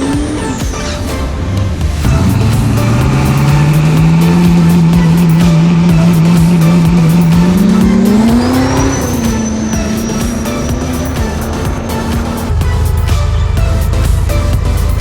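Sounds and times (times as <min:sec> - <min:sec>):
vehicle engine revving high: 0:01.2 - 0:15.0
thin high whistle: 0:08.1 - 0:12.0.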